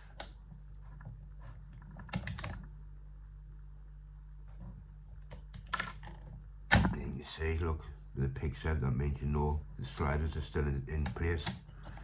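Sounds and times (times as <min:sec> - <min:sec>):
steady low hum: 0:00.0 - 0:12.0
lock picks clicking in padlock: 0:02.1 - 0:02.6.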